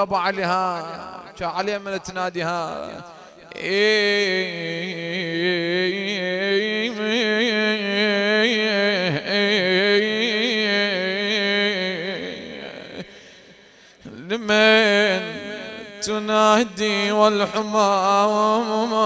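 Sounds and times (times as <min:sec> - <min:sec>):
man chanting: 0:00.0 - 0:19.0.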